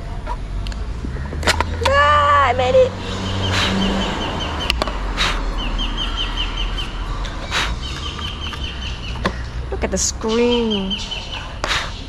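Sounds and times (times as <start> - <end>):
sharp clicks and knocks: 0.2 - 2.0, 4.7 - 5.0, 7.2 - 9.5
small bird chirping rapidly: 2.7 - 12.0.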